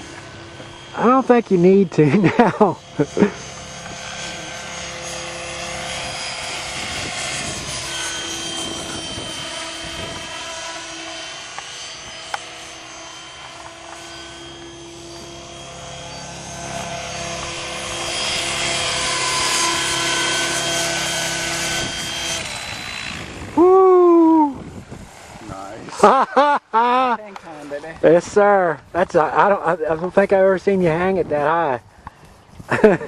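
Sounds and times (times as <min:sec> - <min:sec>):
rotor blades swishing: 0:00.0 - 0:26.1
helicopter motor whine: 0:00.0 - 0:33.0.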